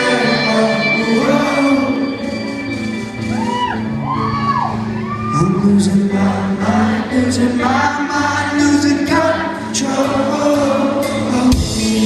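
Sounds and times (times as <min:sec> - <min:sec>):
sustained singing: 0:00.0 - 0:02.9, 0:05.4 - 0:12.0
live rock band playing: 0:00.0 - 0:12.0.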